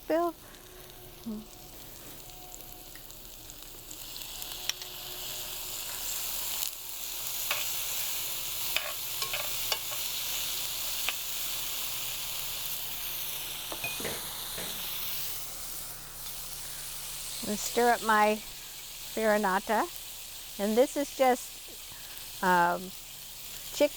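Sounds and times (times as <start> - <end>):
vegetables sizzling in oil: 0.0 - 23.9.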